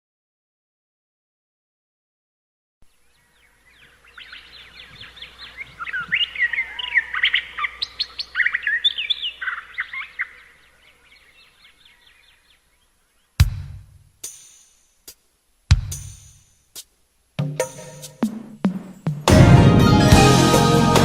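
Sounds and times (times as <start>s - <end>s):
birds chirping: 2.8s - 13.4s.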